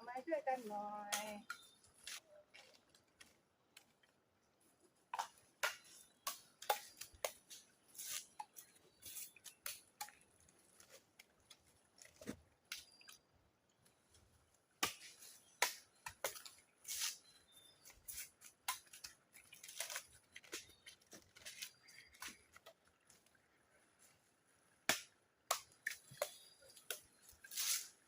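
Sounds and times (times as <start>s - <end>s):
rodents gnawing bamboo: 18.0s - 23.7s.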